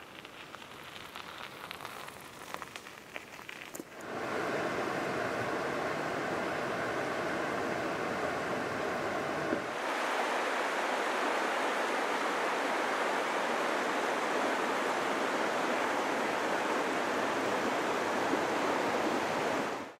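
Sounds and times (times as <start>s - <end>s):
river water rushing: 3.9s - 19.9s.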